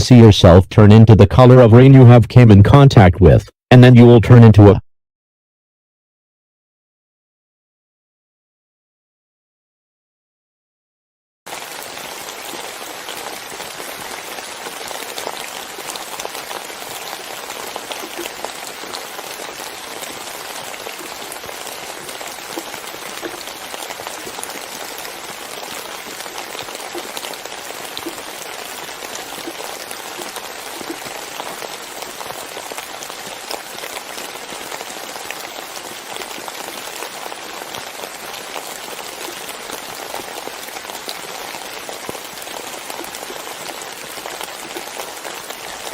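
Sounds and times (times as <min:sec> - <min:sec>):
steady rain falling: 0:11.5 - 0:45.9.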